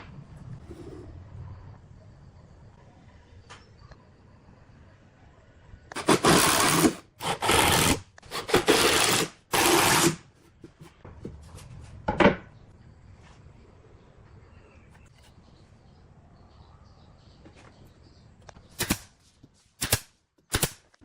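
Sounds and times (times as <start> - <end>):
hand tool scraping wood: 5.9 - 11.0.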